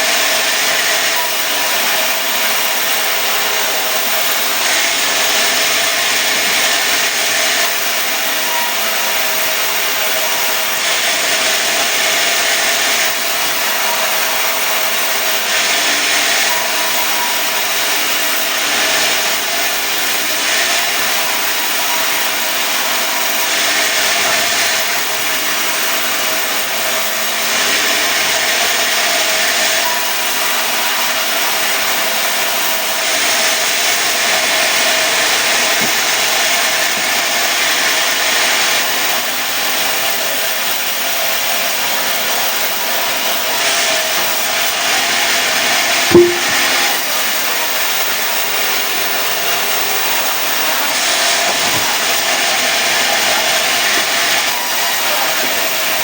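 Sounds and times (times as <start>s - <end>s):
saw blade cutting log: 20.5s - 25.1s, 33.4s - 37.2s, 45.4s - 46.8s.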